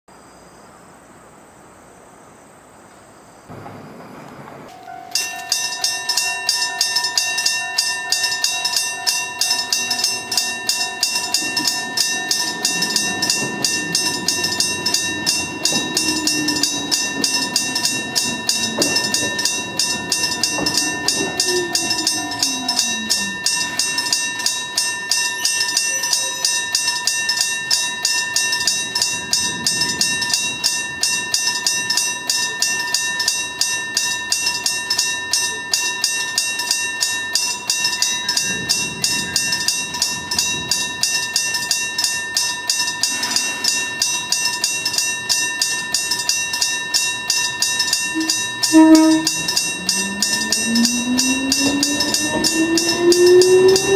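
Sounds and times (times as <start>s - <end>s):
train whine falling in pitch: 3.5s - 33.7s, 36.6s - 44.5s, 47.6s - 53.9s
level-crossing bell ringing: 4.7s - 53.9s.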